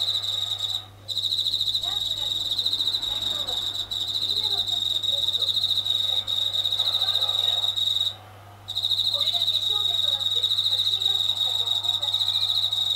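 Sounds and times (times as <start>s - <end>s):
low steady hum: 0.0s - 12.9s.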